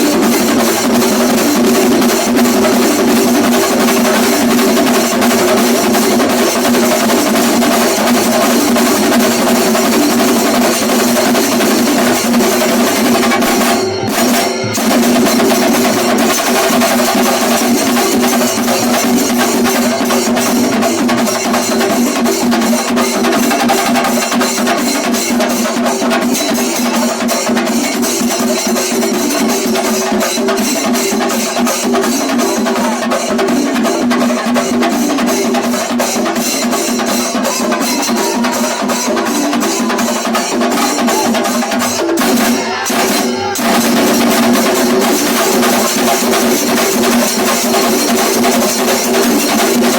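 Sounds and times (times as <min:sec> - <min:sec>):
cymbals: 0:00.0 - 0:49.9
drums beating fast: 0:00.0 - 0:49.9.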